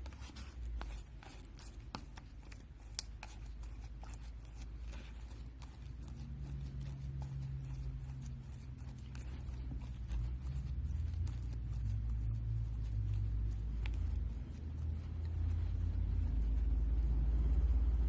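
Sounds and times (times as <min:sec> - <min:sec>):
objects being handled: 0:00.0 - 0:17.1
low rumble: 0:11.5 - 0:18.0.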